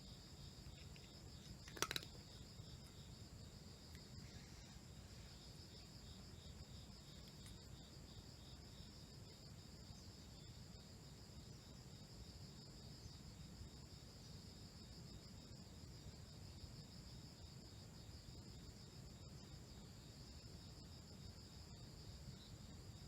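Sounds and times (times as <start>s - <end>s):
insects chirring: 0.0s - 23.0s
faint clicks: 0.7s - 2.2s.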